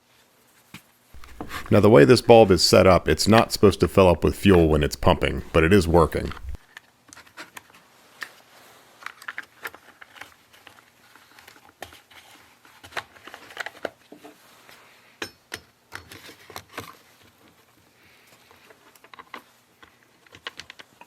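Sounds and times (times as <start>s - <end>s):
tools handled on workbench: 1.2s - 1.8s.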